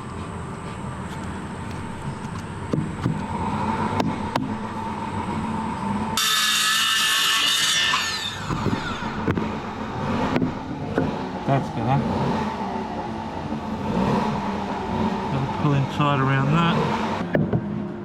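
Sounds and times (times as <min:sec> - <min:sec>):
knocks and clicks of handling: 0:00.2 - 0:03.3, 0:08.5 - 0:11.2
power tool high whine: 0:04.6 - 0:17.1.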